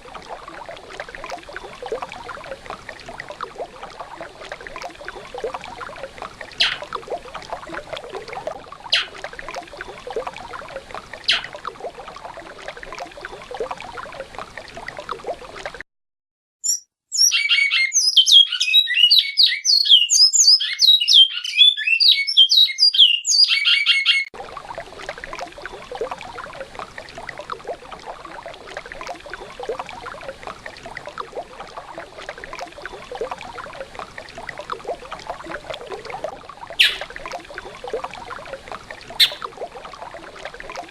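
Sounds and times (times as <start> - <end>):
river water running: 0.0 - 15.7, 24.4 - 40.9
finch singing whistled song: 16.6 - 24.3, 36.8 - 37.1, 39.2 - 39.4.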